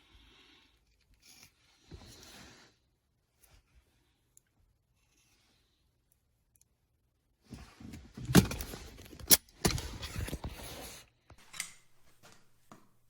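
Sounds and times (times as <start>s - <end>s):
rustling and clattering: 7.5s - 12.6s.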